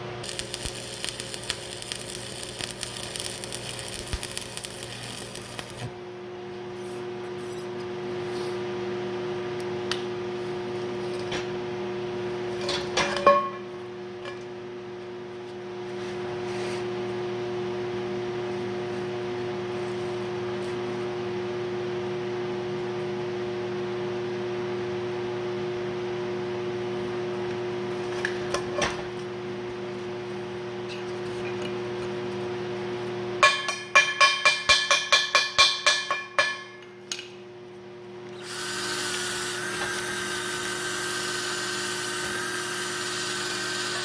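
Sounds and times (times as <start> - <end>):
electrical hum: 0.0 - 33.4.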